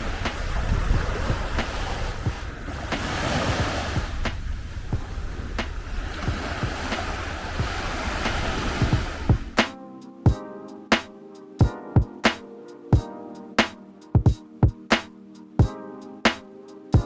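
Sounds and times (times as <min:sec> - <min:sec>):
wind rumbling on microphone: 0:00.0 - 0:09.6
sea waves washing ashore: 0:00.0 - 0:09.7.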